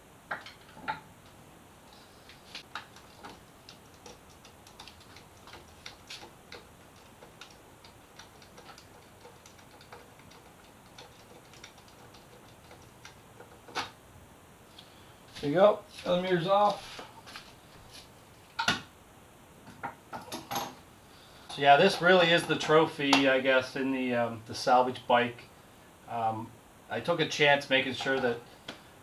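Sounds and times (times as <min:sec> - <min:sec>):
hand tools clicking on metal: 0:02.6 - 0:13.9.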